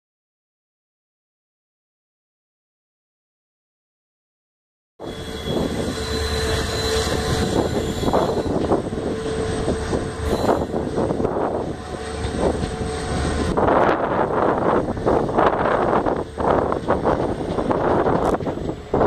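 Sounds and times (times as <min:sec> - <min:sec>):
diesel locomotive engine drone: 0:05.0 - 0:19.0.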